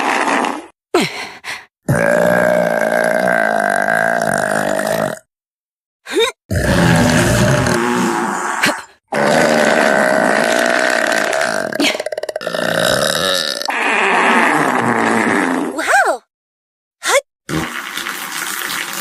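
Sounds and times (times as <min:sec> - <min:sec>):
woman burping: 0:08.6 - 0:13.7.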